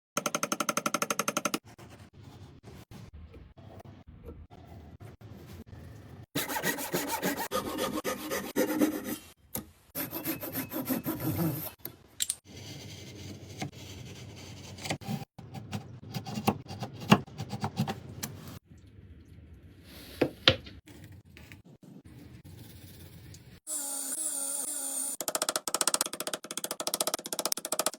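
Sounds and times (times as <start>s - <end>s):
hand saw cutting wood: 6.4s - 9.2s.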